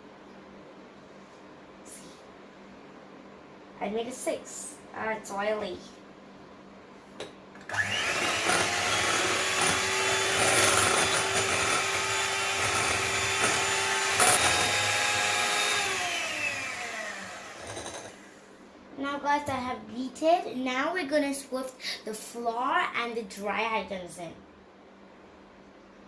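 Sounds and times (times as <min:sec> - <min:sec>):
electric mixer whining: 0:07.7 - 0:18.5.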